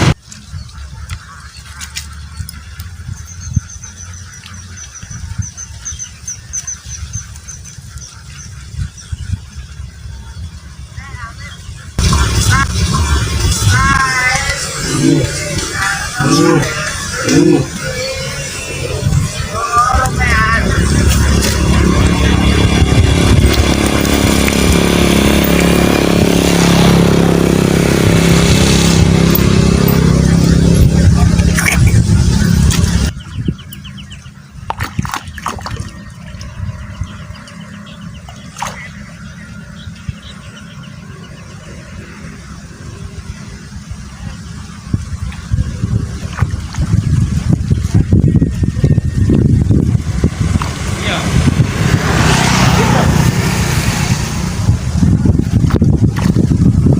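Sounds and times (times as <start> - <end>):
low rumble: 0.0 - 56.9
small engine running: 20.6 - 33.2, 36.0 - 56.9.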